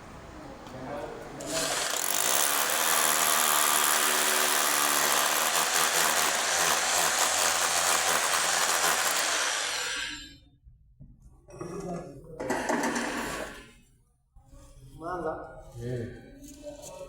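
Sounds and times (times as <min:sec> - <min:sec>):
electric drill running: 0:01.5 - 0:10.3.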